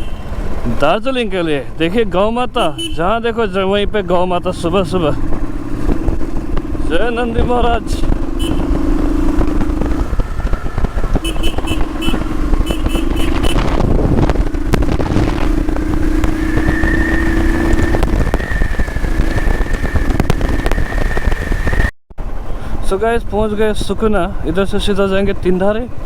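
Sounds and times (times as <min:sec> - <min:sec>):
motorcycle engine cruising: 0:00.0 - 0:26.0
wind on microphone: 0:05.3 - 0:21.9.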